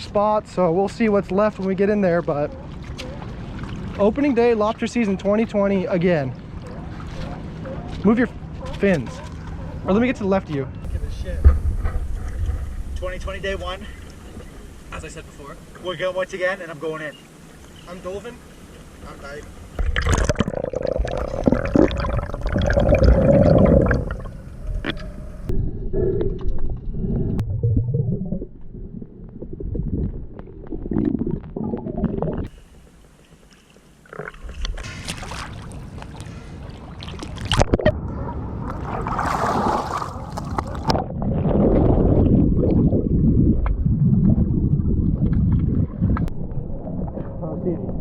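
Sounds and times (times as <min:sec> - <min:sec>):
water sloshing and gurgling: 0:01.6 - 0:48.0
low splashing: 0:10.8 - 0:33.2, 0:34.0 - 0:48.0.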